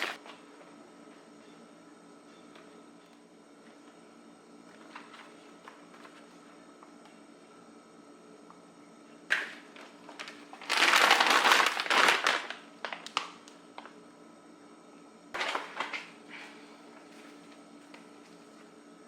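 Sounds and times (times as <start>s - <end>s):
plastic packaging crinkling: 0.0s - 0.2s, 9.3s - 14.0s, 15.4s - 16.2s.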